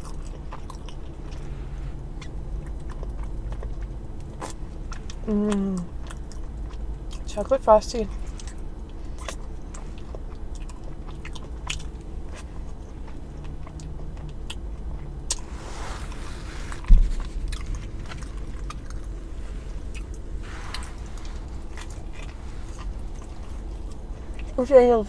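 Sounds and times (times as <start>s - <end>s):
chewing and biting food: 0.0s - 24.6s
dull thump: 16.8s - 17.3s.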